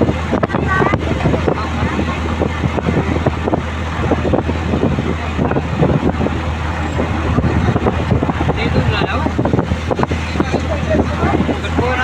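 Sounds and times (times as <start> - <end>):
low rumble of road vehicles: 0.0 - 12.0.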